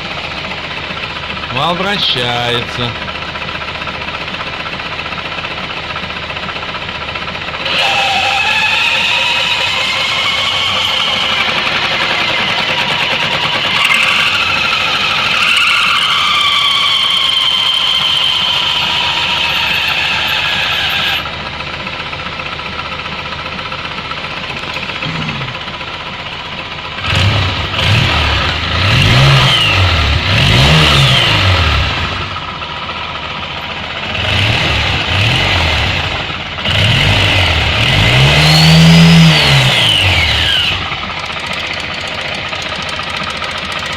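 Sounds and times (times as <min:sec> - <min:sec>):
engine revving: 0:07.5 - 0:21.3, 0:24.8 - 0:25.8, 0:26.9 - 0:43.9.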